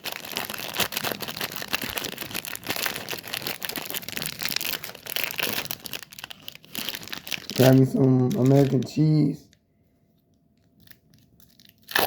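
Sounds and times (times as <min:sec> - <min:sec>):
plastic packaging crinkling: 0:00.0 - 0:09.6, 0:10.6 - 0:12.0.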